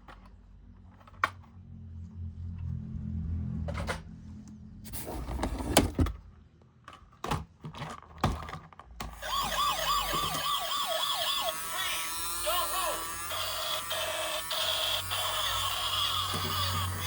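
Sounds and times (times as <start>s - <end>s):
toy siren warbling wail: 9.2s - 17.0s.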